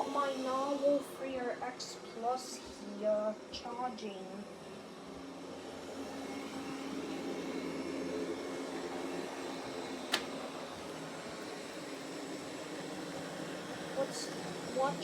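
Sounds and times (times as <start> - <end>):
robot vacuum whirring: 4.1 - 15.0.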